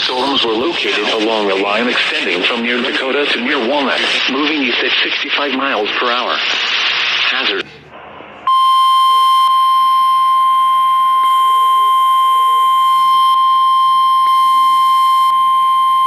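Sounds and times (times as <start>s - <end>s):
long steady alarm beep: 8.5s - 16.0s.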